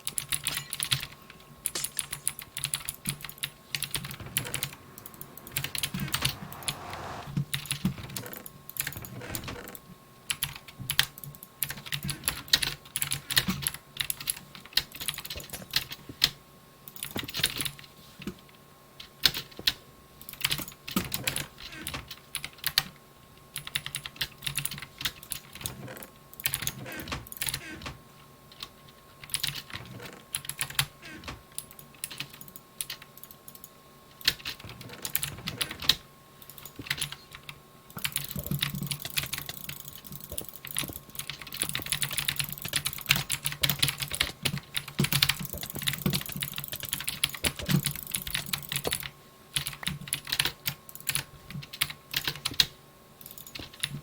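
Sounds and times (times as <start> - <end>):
keyboard typing: 34.2 - 52.6.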